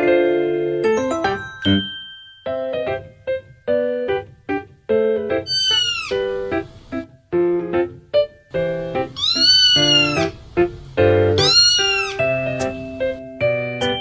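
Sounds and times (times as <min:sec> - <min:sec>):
piano music: 0:00.0 - 0:14.0
kitten meowing: 0:05.5 - 0:06.3, 0:09.0 - 0:10.4, 0:11.4 - 0:12.3.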